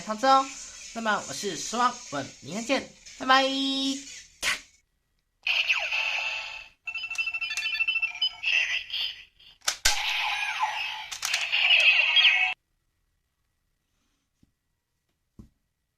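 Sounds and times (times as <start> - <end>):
electronic toy jingle: 6.8 - 9.3.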